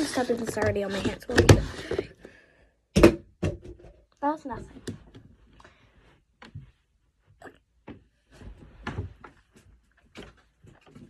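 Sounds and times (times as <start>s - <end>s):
objects knocking and thumping: 0.0s - 5.4s, 7.8s - 11.0s.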